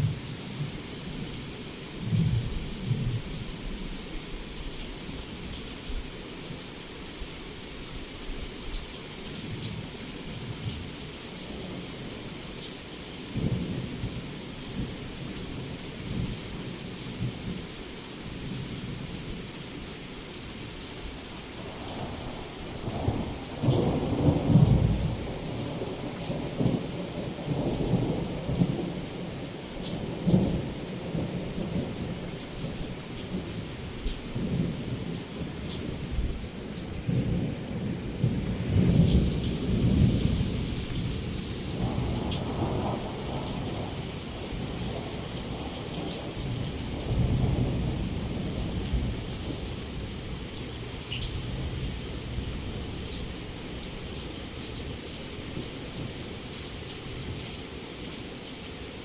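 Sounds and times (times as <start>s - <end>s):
heavy rain pouring: 0.0s - 59.0s
thunder rumbling: 36.0s - 50.1s.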